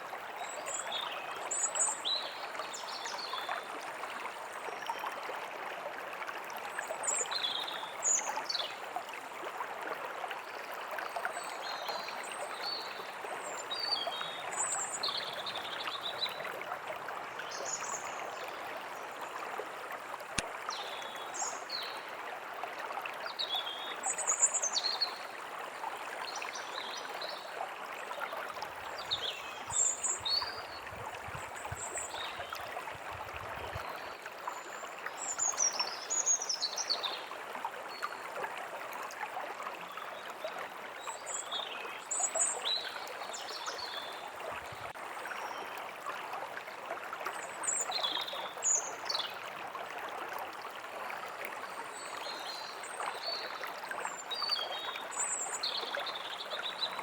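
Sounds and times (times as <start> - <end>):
stream flowing: 0.0 - 57.0.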